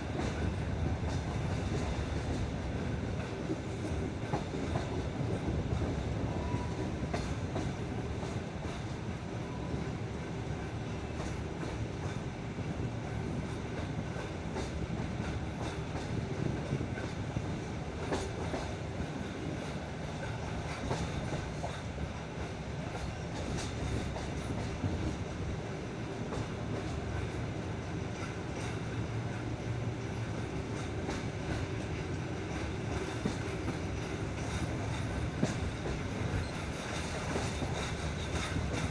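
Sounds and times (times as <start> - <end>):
train wheels rumbling on rail: 0.0 - 38.9.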